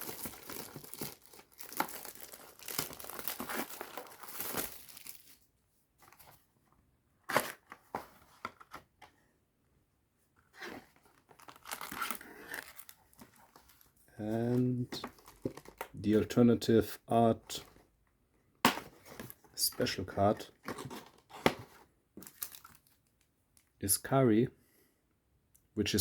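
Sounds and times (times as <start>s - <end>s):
plastic and paper tearing: 10.6s - 13.0s.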